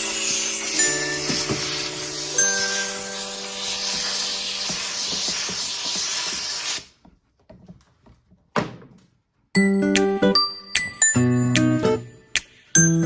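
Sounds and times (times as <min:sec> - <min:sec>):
steam jet hissing: 0:00.0 - 0:06.9.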